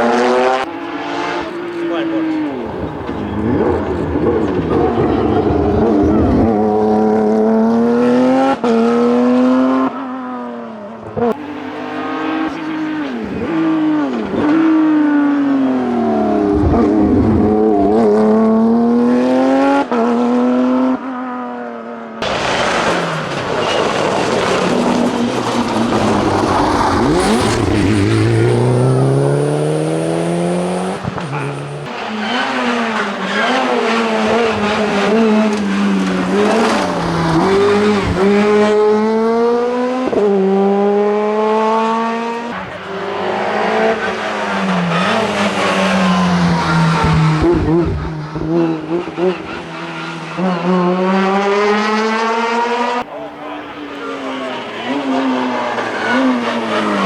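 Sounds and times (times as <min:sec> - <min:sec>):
rally car engines revving: 0:00.0 - 0:57.0.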